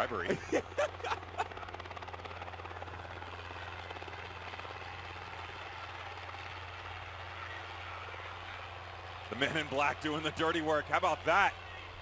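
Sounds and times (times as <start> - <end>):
helicopter rotor chopping: 0.0 - 12.0.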